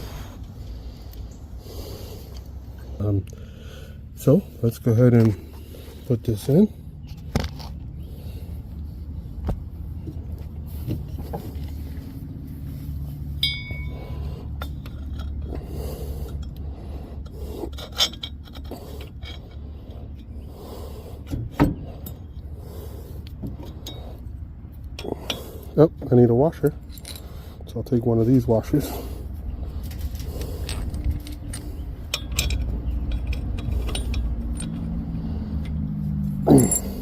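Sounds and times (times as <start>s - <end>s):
steady low hum: 0.0s - 37.0s
metal parts scraping and clinking: 11.1s - 20.5s, 21.2s - 37.0s
ringing metallic clink: 13.4s - 14.3s, 36.5s - 37.0s.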